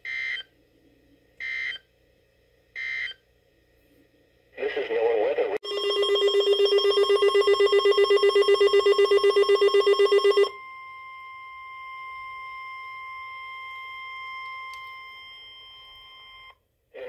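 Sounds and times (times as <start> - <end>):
alert buzzer beeping in fast pulses: 5.6 - 10.5
steady warning alarm tone: 5.6 - 16.6.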